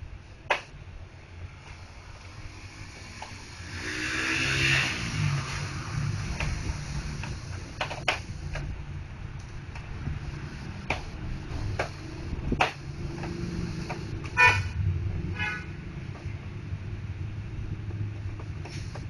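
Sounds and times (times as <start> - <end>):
low traffic rumble: 0.0 - 19.0
plastic parts clicking and knocking: 7.2 - 8.7
vehicle horn toots: 14.3 - 14.8.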